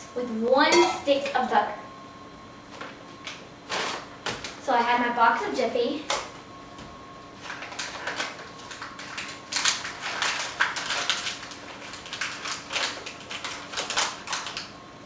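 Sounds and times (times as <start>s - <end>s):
cardboard packaging rustling: 7.4s - 14.7s.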